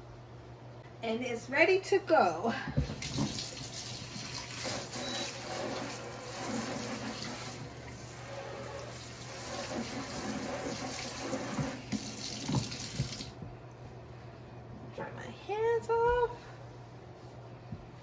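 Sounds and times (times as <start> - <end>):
tap water splashing: 2.8 - 4.6, 10.7 - 13.5.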